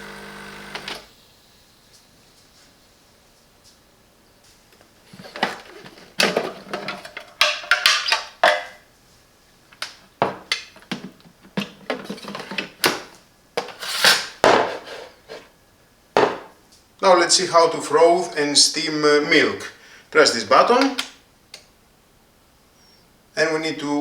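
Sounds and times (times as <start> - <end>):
hard objects clattering: 4.8 - 8.8, 9.7 - 15.5, 16.2 - 16.6.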